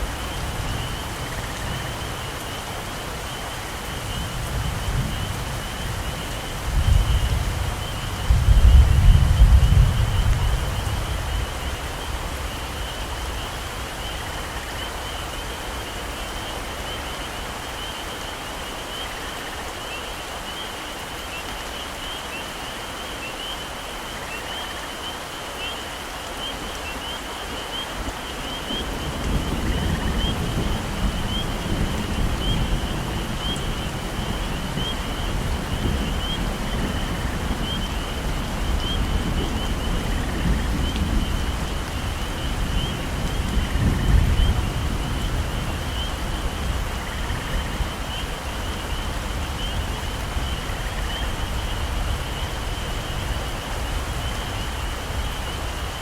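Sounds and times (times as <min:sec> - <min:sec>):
heavy rain on forest: 0:00.0 - 0:56.0.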